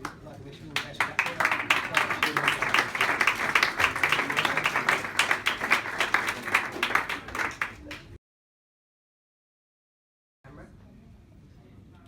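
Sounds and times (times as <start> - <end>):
people clapping: 0.0 - 8.2.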